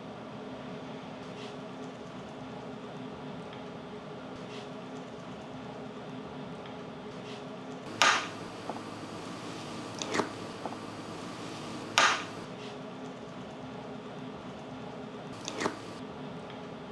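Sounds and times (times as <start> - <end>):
light clicks: 7.9 - 12.5, 15.4 - 16.0
steady low hum: 7.9 - 12.5, 15.4 - 16.0.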